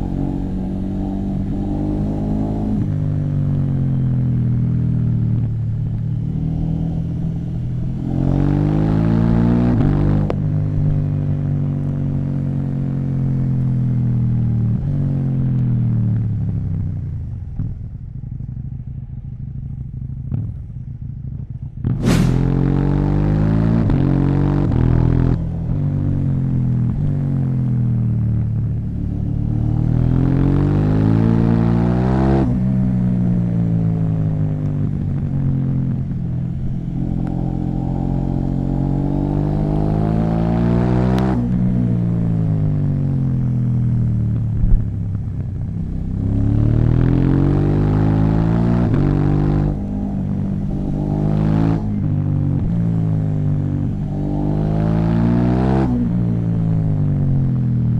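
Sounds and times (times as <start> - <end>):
motorcycle engine revving: 0.0 - 57.9
sharp exhaust crack: 21.9 - 22.6.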